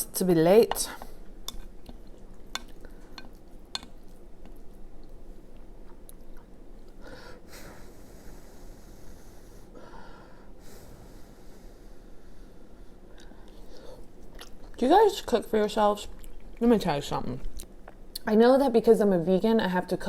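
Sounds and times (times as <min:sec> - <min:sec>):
chewing soft wet food: 0:01.4 - 0:07.0, 0:13.1 - 0:14.8, 0:16.1 - 0:16.6.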